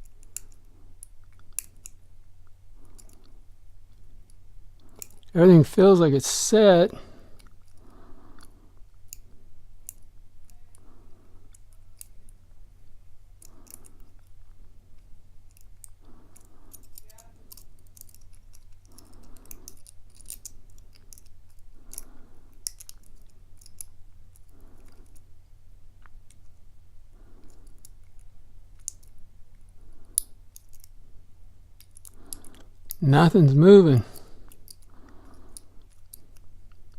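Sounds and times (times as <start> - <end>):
low steady hum: 0.0 - 36.9
soft breaths: 0.0 - 36.9
lock pick clicking and scraping: 4.3 - 5.3, 13.4 - 14.4, 15.4 - 25.3, 27.4 - 31.0, 31.8 - 33.0, 34.5 - 36.9.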